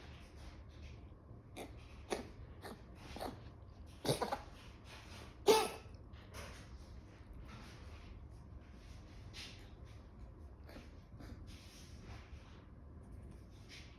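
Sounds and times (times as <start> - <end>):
pet animal coughing: 1.6 - 4.6, 5.4 - 6.0.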